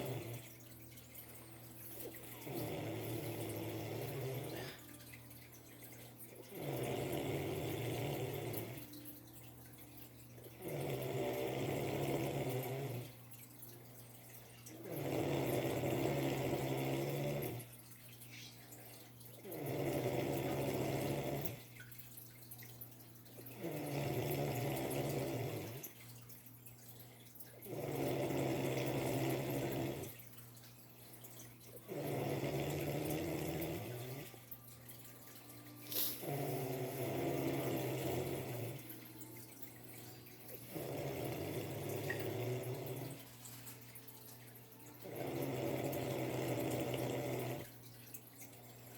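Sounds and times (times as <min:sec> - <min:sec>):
cat snoring: 0:00.0 - 0:00.5, 0:02.0 - 0:04.8, 0:06.4 - 0:08.9, 0:10.6 - 0:13.2, 0:14.7 - 0:17.7, 0:19.4 - 0:21.6, 0:23.5 - 0:25.9, 0:27.6 - 0:30.2, 0:31.9 - 0:34.4, 0:35.9 - 0:39.0, 0:40.6 - 0:43.2, 0:45.0 - 0:47.7.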